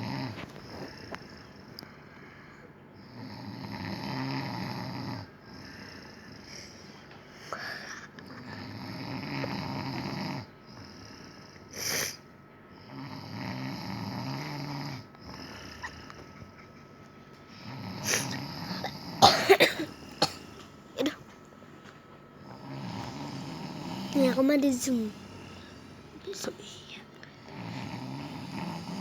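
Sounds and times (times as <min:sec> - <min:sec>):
man snoring: 0:00.0 - 0:01.7, 0:03.0 - 0:06.7, 0:07.5 - 0:12.2, 0:12.8 - 0:16.3, 0:17.6 - 0:20.5, 0:22.4 - 0:26.2, 0:27.3 - 0:29.0
hissing breath: 0:18.0 - 0:18.8
sharp cough-like sounds: 0:18.8 - 0:20.5.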